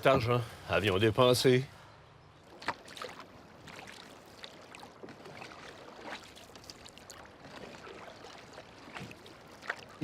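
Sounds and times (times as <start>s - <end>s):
paddle splashing in water: 2.4s - 10.0s.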